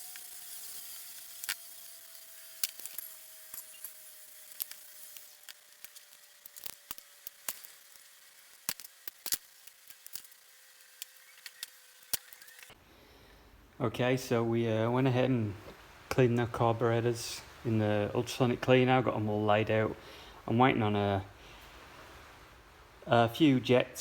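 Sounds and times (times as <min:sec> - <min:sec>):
high hiss: 0:00.0 - 0:24.0.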